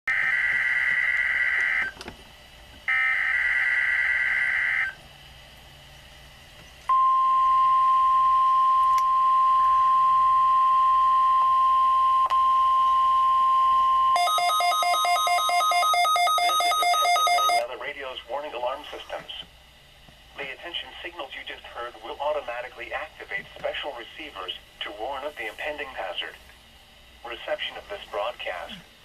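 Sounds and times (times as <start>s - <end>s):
steady alarm tone: 0.1s - 2.0s, 2.9s - 5.0s, 6.9s - 17.6s
alternating two-pitch beeping: 6.9s - 17.6s.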